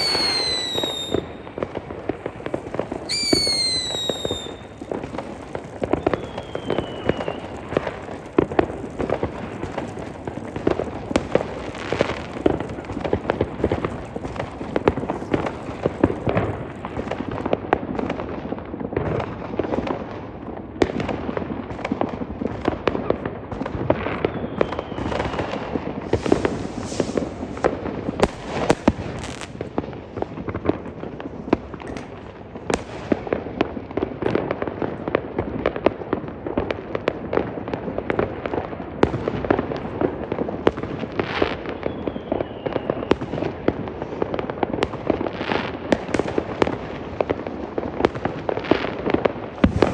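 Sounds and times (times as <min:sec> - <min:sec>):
falling firework whistle: 0:00.0 - 0:17.5, 0:24.1 - 0:29.7, 0:41.4 - 0:43.6
fireworks bangs and crackling: 0:00.0 - 0:49.9.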